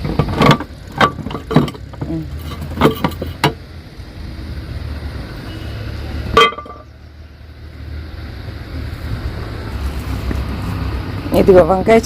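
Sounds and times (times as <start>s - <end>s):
road traffic rumble: 0.0s - 12.0s
vehicle horn toot: 5.4s - 5.9s.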